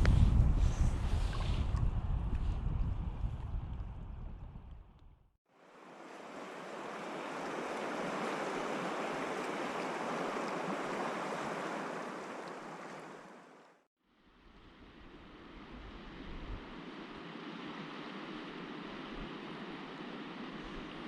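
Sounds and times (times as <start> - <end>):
river water rushing: 5.5 - 13.8.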